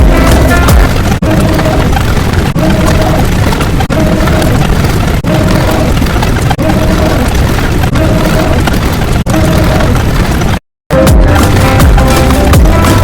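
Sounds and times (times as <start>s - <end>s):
steady musical tones: 0.0s - 3.1s, 10.9s - 13.0s
looping noisy sound effect: 0.0s - 13.0s.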